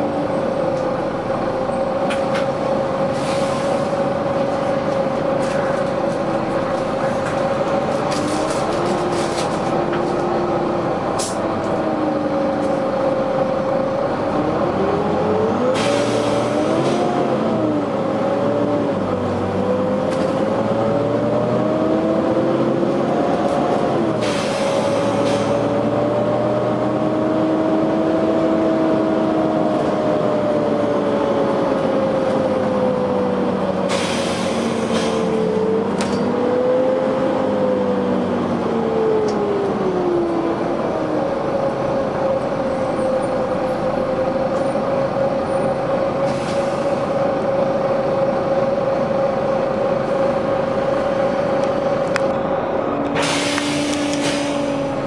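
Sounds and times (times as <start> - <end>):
bus engine and fan whine: 0.0 - 55.0
compressed air hisses: 53.2 - 54.7.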